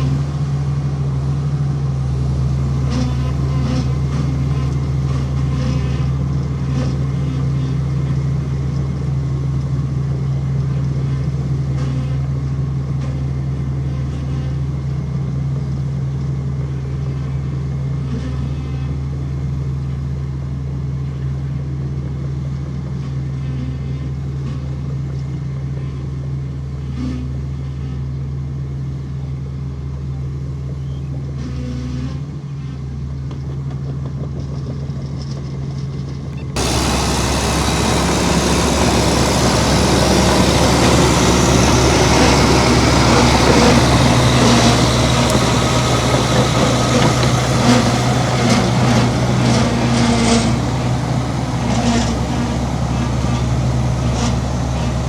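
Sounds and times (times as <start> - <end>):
heavy diesel engine drone: 0.0 - 7.5, 36.6 - 55.0
rough loud engine noise: 0.0 - 12.3, 36.6 - 55.0.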